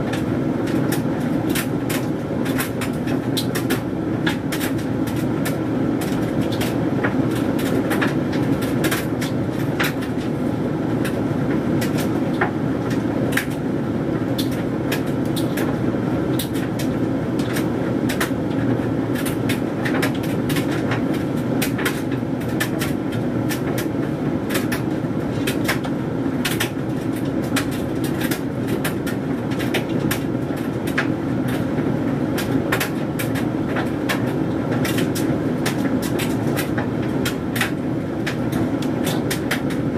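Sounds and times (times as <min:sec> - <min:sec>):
tumble dryer rumbling: 0:00.0 - 0:39.9
clothes tumbling clicks and taps: 0:32.4 - 0:39.9.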